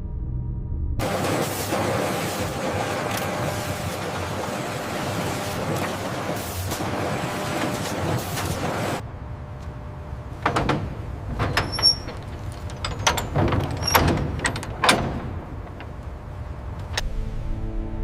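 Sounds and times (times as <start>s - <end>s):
knocks and clatters: 10.3s - 17.0s
high squeaks: 11.5s - 14.2s.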